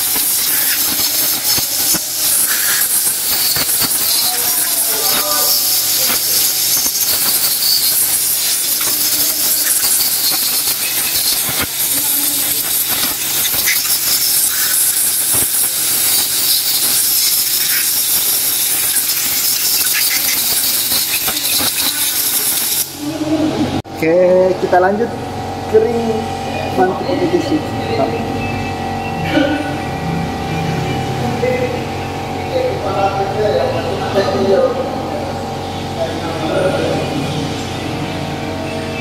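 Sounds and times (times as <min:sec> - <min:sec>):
compressed air hissing: 0:00.0 - 0:23.2.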